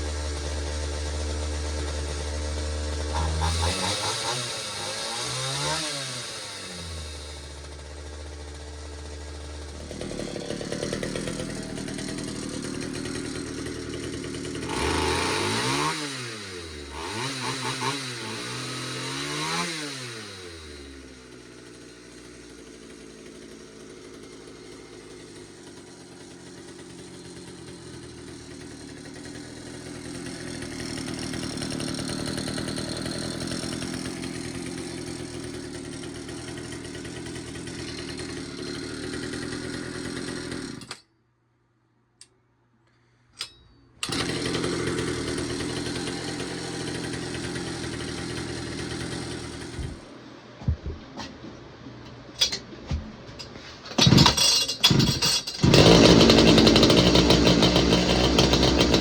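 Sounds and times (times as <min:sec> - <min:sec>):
chainsaw engine revving and idling: 0:00.0 - 0:41.0, 0:44.0 - 0:50.1, 0:53.9 - 0:59.0.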